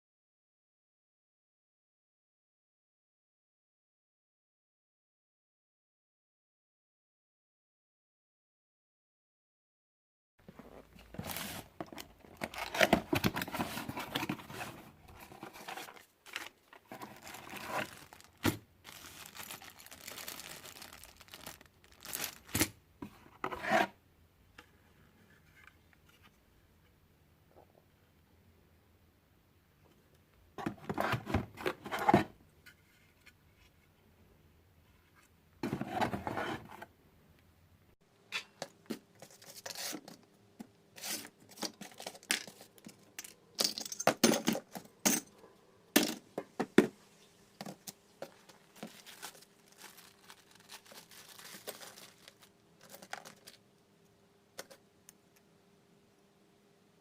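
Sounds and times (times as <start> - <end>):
rustling scrapes: 10.5 - 11.8, 12.4 - 22.5
metal parts and tools clinking: 41.8 - 45.4.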